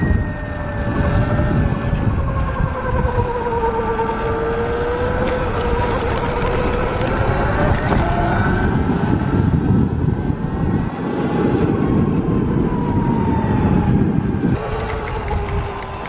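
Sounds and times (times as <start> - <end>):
wind rumble on microphone: 0.0 - 16.0
electric motor whine: 14.6 - 16.0.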